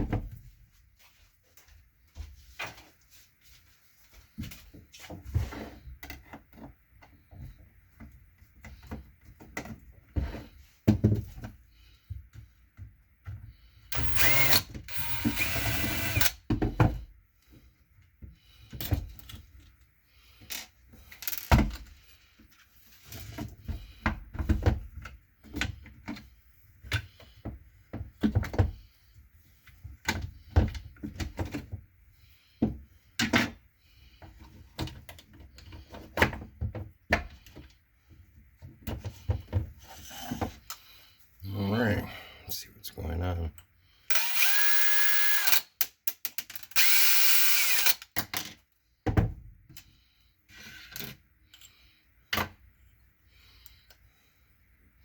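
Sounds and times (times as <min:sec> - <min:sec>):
mechanical clicks and ratcheting: 0:44.1 - 0:45.7.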